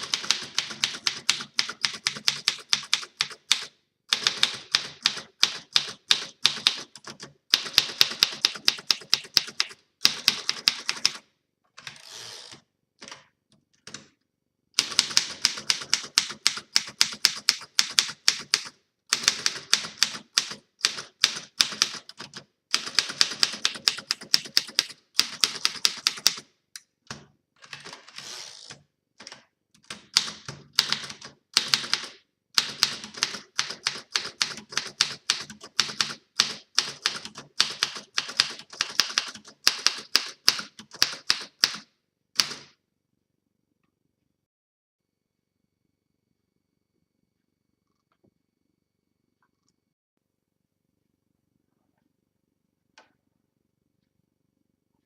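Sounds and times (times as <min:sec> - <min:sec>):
typewriter keystrokes: 0:00.0 - 0:11.2, 0:14.8 - 0:26.4, 0:29.2 - 0:42.7.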